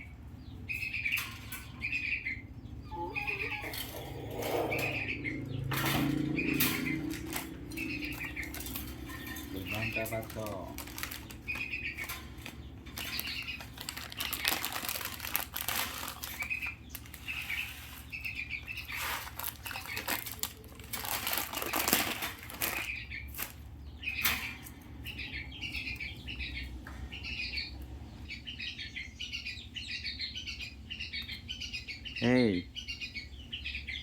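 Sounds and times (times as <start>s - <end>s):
myna bird chirping: 0.0s - 34.0s
myna harsh rasping calls: 2.8s - 10.1s.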